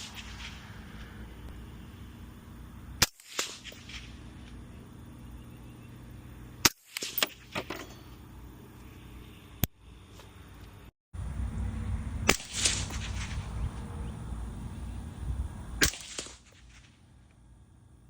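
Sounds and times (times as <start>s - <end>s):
gunshot echo: 12.2s - 13.5s, 15.8s - 16.9s
suppressed rifle shots: 15.8s - 16.9s.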